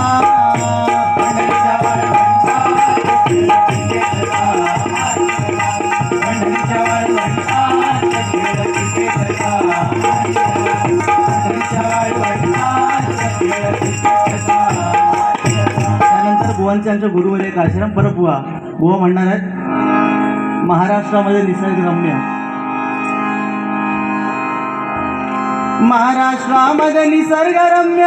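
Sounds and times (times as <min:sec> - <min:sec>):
hand drum fast rhythm: 0:00.0 - 0:16.8
sustained harmonium notes: 0:00.0 - 0:16.9, 0:18.5 - 0:28.0.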